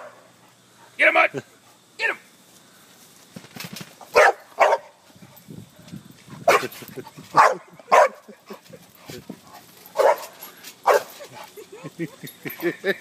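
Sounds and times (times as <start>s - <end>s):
dog barking: 4.1s - 4.9s, 7.4s - 8.2s, 10.0s - 11.2s.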